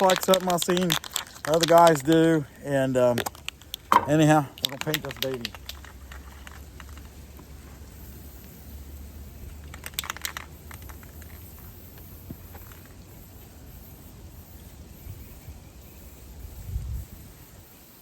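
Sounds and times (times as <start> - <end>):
handling clicks and rustles: 0.0 - 8.6, 9.4 - 13.6.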